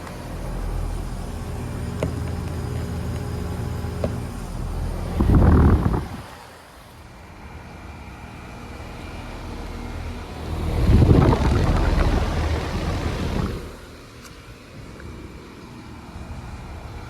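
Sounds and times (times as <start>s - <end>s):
loud rumbling surges: 0.0s - 6.5s, 8.6s - 14.1s
air conditioner humming: 0.0s - 17.0s.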